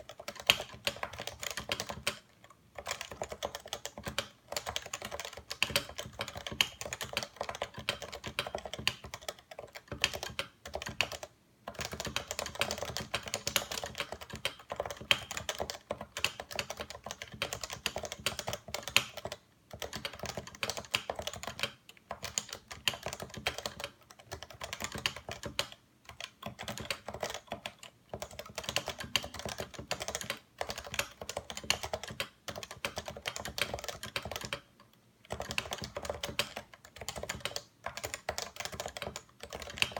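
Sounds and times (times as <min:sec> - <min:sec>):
fast typing on keyboard: 0:00.0 - 0:39.9.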